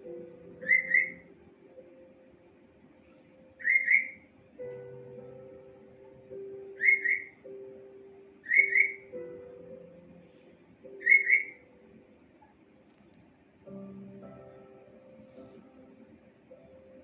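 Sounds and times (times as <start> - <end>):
soft background music: 0.0 - 17.0
parrot whistling: 0.6 - 1.3, 3.6 - 4.2, 6.8 - 7.4, 8.4 - 9.2, 11.0 - 11.7.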